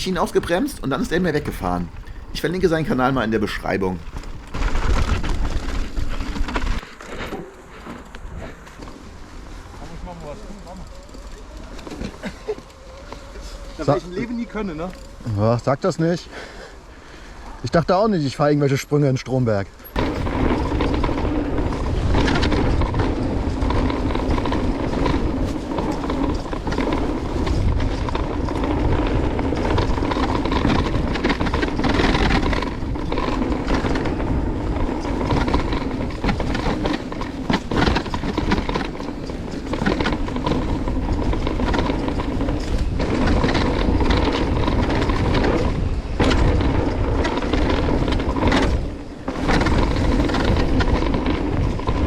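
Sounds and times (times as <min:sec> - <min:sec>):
wind rushing over microphone: 0:00.0 - 0:06.8, 0:19.9 - 0:52.0
bike tyres and rattling: 0:00.0 - 0:52.0.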